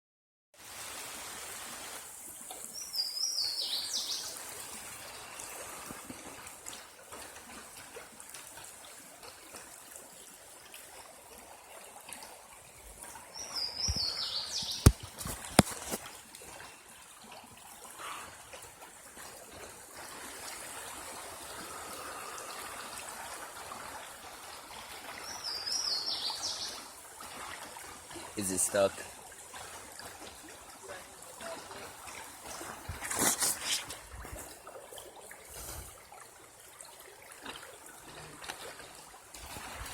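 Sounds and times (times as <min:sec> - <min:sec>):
water trickling: 0:00.7 - 0:39.9
high falling bird song: 0:13.4 - 0:14.9.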